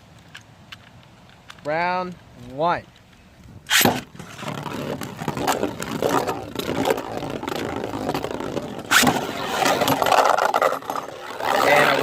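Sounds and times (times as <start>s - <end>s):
spinning tops whirring and clattering: 6.9s - 12.0s.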